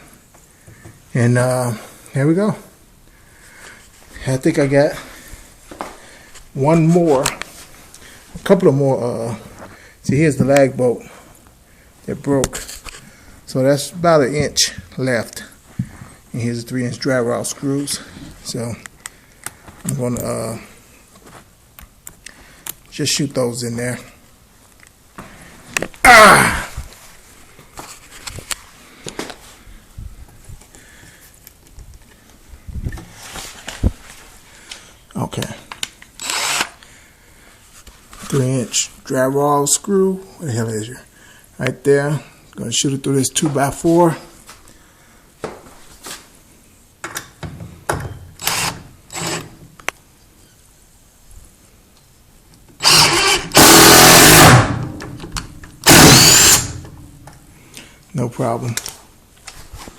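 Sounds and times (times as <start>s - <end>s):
impact driver driving screw into wood: 36.2s - 36.8s, 48.4s - 49.5s, 52.8s - 55.0s, 55.8s - 56.9s.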